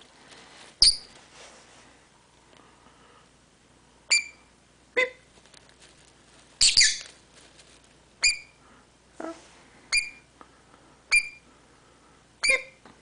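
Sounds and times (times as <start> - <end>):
lovebird chirping: 0.8 - 1.1, 4.1 - 5.2, 6.6 - 7.1, 8.2 - 8.6, 9.9 - 10.3, 11.1 - 11.4, 12.4 - 12.8.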